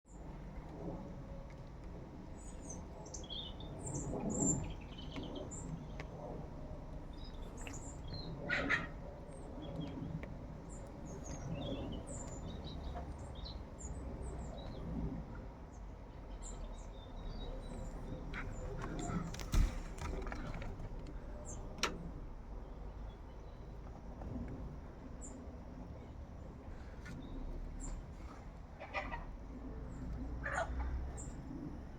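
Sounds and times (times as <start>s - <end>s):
small birds chirping: 2.4s - 6.2s, 7.1s - 15.0s.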